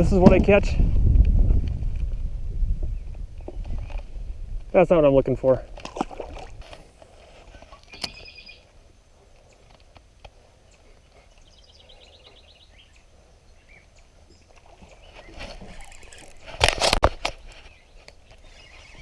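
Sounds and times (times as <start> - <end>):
water splashing: 5.7 - 7.4
bird trill: 7.9 - 8.7.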